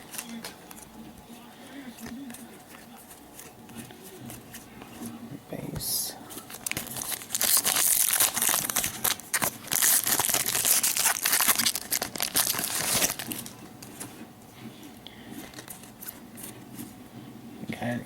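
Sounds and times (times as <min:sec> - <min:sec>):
foil wrapper crinkling and tearing: 0:00.0 - 0:00.9, 0:06.3 - 0:14.1, 0:15.4 - 0:16.2
faint card handling: 0:00.0 - 0:17.0.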